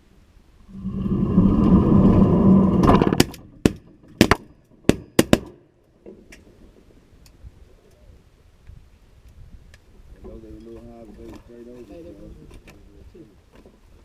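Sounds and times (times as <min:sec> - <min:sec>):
shotgun shots: 0:03.2 - 0:05.6.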